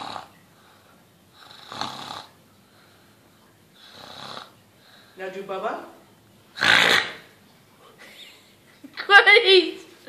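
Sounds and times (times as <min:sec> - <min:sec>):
boy imitating snoring: 0:00.0 - 0:00.3, 0:01.4 - 0:02.3, 0:03.8 - 0:04.5, 0:06.6 - 0:07.2.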